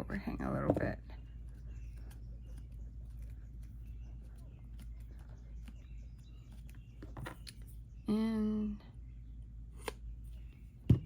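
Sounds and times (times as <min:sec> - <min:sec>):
steady low hum: 0:00.0 - 0:11.0
paper and card being handled: 0:01.3 - 0:07.8.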